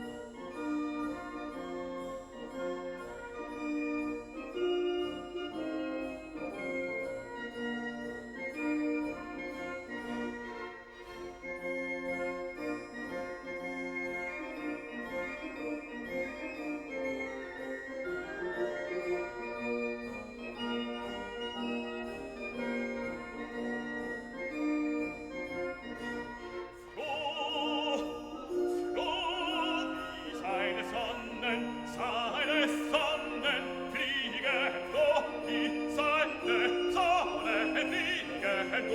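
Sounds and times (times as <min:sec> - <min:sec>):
keyboard accompaniment: 0:00.0 - 0:38.9
classical singing voice: 0:25.8 - 0:38.9.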